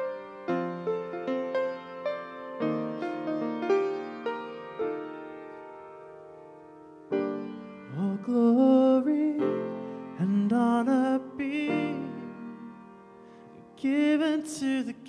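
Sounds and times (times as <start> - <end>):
piano chords: 0.0 - 15.0
person singing: 7.9 - 13.0, 13.6 - 15.0.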